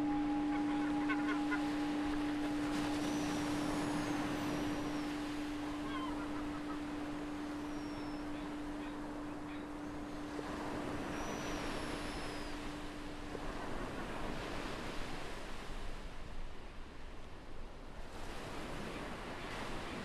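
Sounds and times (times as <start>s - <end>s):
faint seagull calls: 0.0s - 10.0s
low steady tone: 0.0s - 14.4s
ocean surf washing: 0.0s - 17.0s.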